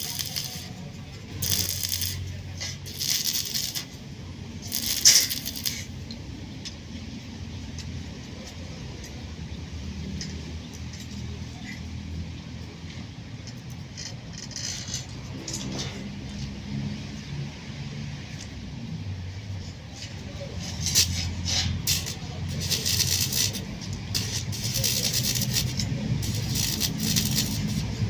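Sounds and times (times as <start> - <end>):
gritty rattling and scraping: 0.0 - 6.0, 12.9 - 16.4, 19.6 - 28.0.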